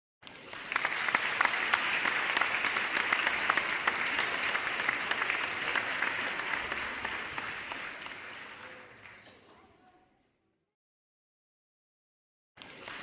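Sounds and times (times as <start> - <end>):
crowd applauding: 0.2 - 9.8, 12.6 - 13.0.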